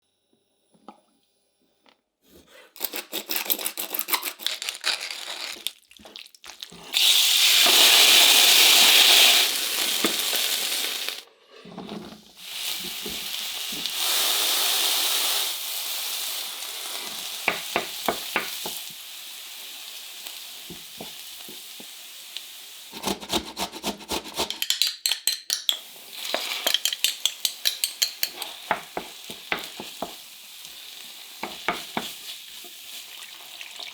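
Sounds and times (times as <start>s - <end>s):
food sizzling in a pan: 4.3s - 11.3s, 12.1s - 23.0s, 25.0s - 33.9s
spatula clicking against pan: 24.4s - 29.9s.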